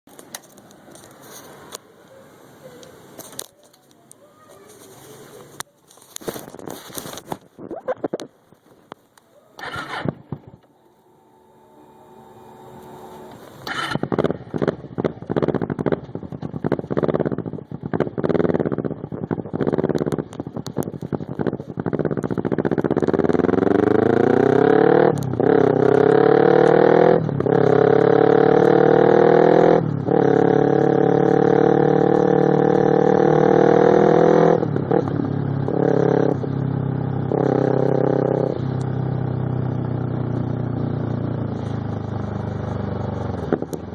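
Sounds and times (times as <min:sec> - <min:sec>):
motorcycle engine revving: 0:09.6 - 0:43.9.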